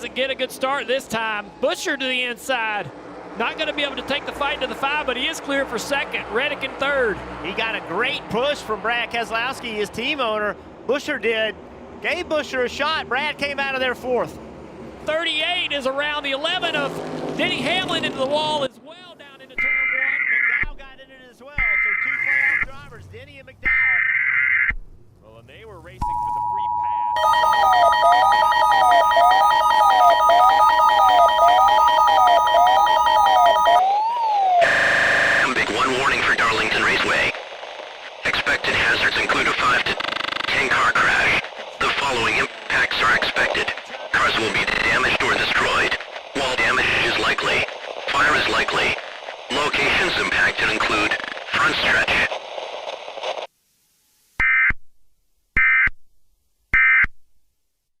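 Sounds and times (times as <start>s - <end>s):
two-tone alarm: 26.2s - 33.8s
fast pulsing beep: 27.2s - 33.8s
siren-like sweeping tone: 27.2s - 35.0s
noise: 34.6s - 55.0s.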